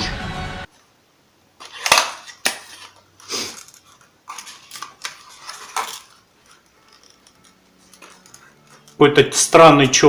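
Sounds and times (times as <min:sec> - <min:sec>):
rustle of handling: 0:02.6 - 0:09.2.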